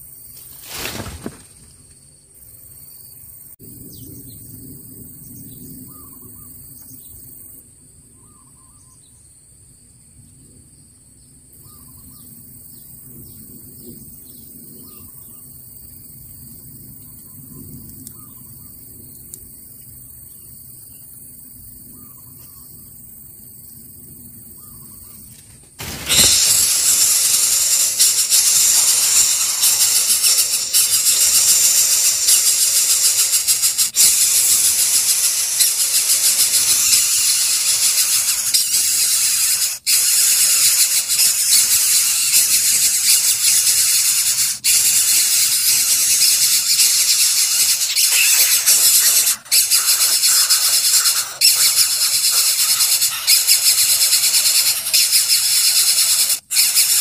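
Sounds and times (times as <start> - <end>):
bird chick begging squeal: 25.8 - 57.0.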